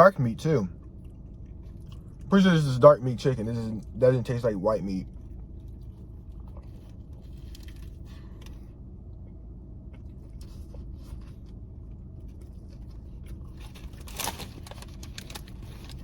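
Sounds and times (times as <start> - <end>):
steady low hum: 0.0 - 16.0
person chewing crispy food: 0.8 - 2.3, 5.1 - 8.7, 9.8 - 16.0
soft crunches and clicks: 12.2 - 16.0.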